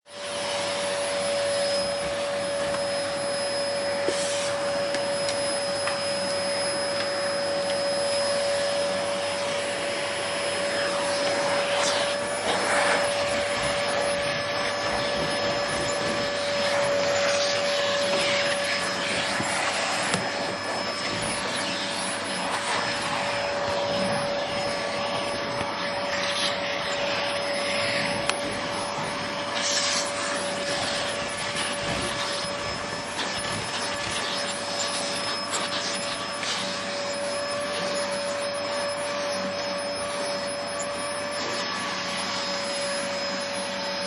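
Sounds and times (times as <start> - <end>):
vacuum cleaner running: 0.0 - 44.0
vacuum nozzle bumps and scrapes: 10.8 - 36.7.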